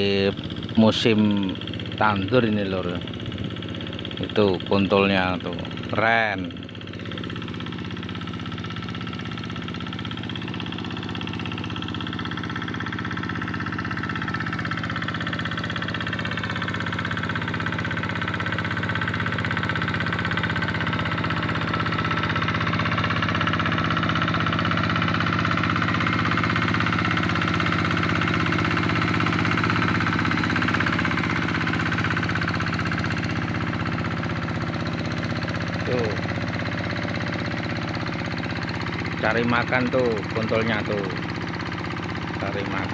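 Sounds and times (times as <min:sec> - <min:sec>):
tractor engine running: 0:00.0 - 0:42.9.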